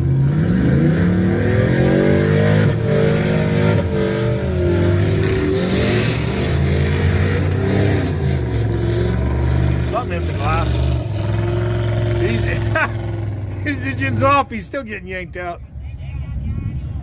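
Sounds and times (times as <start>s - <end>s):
truck engine revving hard: 0.0s - 14.6s.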